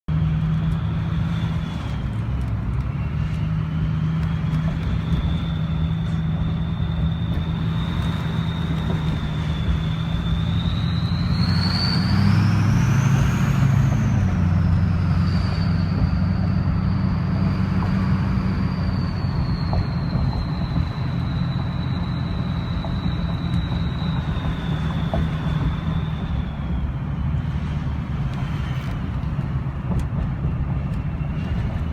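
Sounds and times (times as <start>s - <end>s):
engine low rumble: 0.0s - 31.9s
turbocharger whistling: 0.2s - 31.9s.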